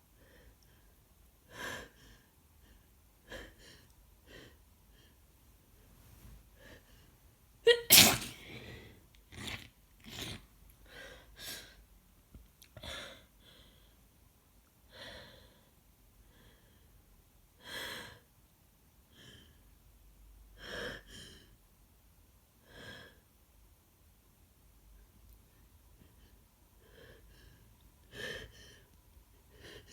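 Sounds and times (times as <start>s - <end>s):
woman sniffling: 7.7s - 9.0s.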